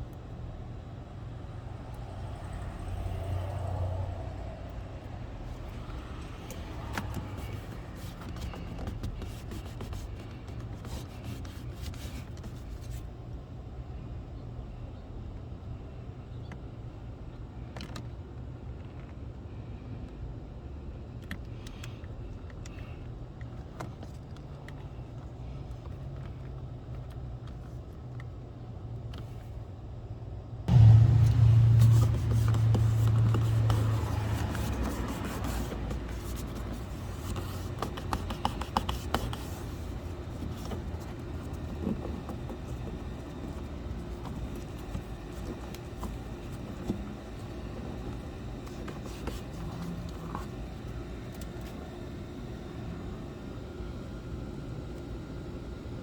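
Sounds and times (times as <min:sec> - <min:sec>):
vehicle low rumble: 0:00.0 - 0:56.0
steady low hum: 0:29.1 - 0:56.0.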